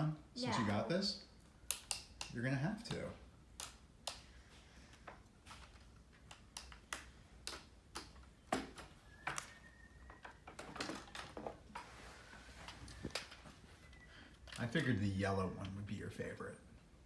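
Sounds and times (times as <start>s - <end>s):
plastic pieces clicking: 5.6s - 11.4s.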